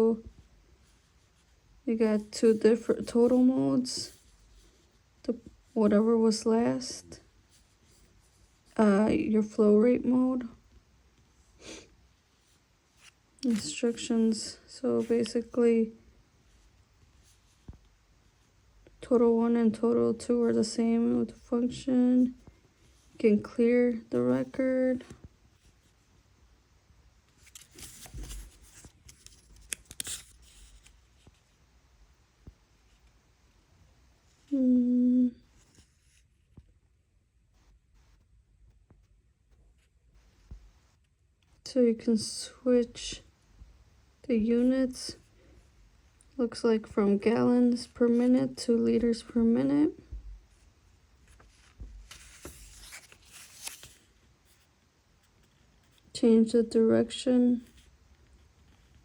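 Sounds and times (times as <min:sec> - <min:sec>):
paper pages rustling: 0:12.4 - 0:13.9, 0:27.3 - 0:31.5, 0:50.5 - 0:56.1.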